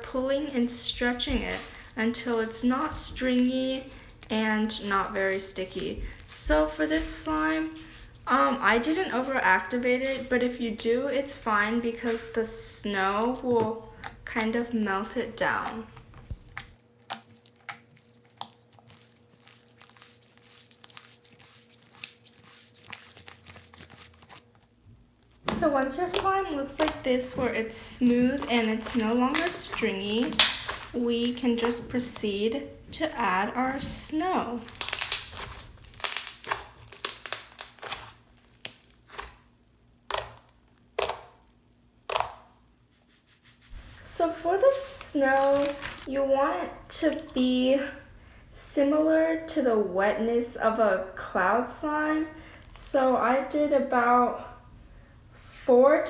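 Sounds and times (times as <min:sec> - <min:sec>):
slime being kneaded by hand: 0:00.0 - 0:10.5, 0:13.1 - 0:41.4, 0:42.0 - 0:46.1, 0:46.7 - 0:47.6.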